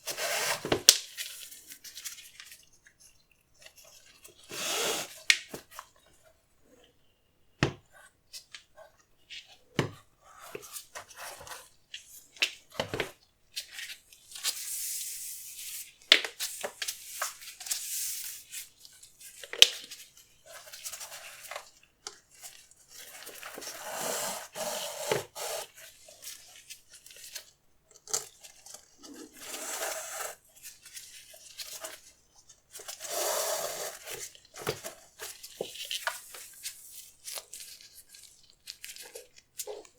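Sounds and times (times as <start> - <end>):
packaging rustling and crinkling: 18.8 - 39.9.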